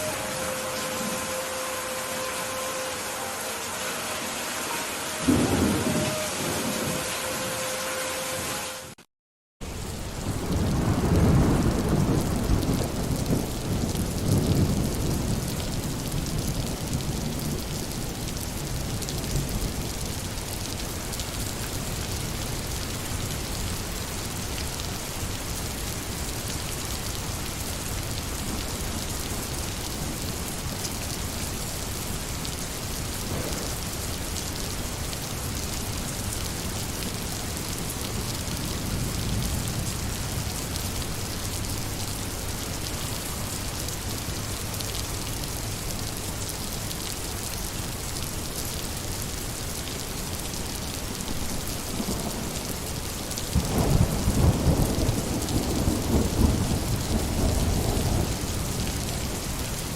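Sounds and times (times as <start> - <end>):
steady rain falling: 0.0 - 9.0, 9.6 - 59.9
thunder rumbling: 5.1 - 7.6, 10.1 - 20.6, 33.0 - 42.0, 51.2 - 59.9.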